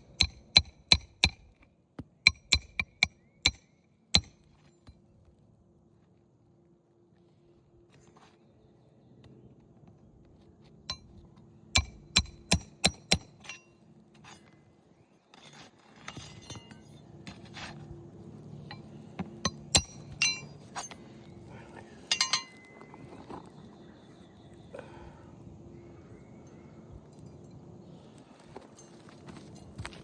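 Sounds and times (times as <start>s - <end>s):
hammer striking metal: 2.3s - 4.4s, 11.8s - 13.7s, 19.4s - 20.9s.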